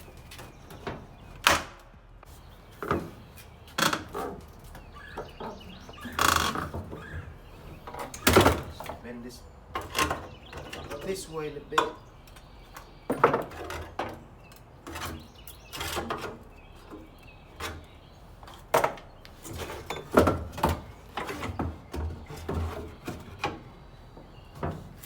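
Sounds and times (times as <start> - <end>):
metal panel knocking and clunking: 18.5 - 25.0.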